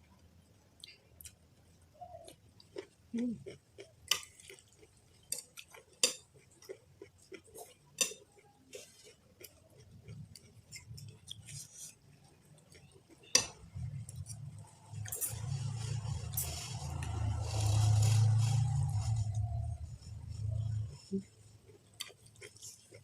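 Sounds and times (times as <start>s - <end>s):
cutlery clinking against a bowl: 13.3s - 13.6s.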